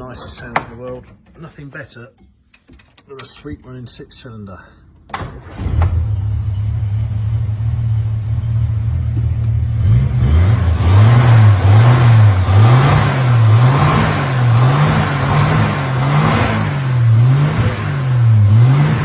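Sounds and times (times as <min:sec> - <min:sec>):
car engine idling and revving: 0:05.4 - 0:19.0.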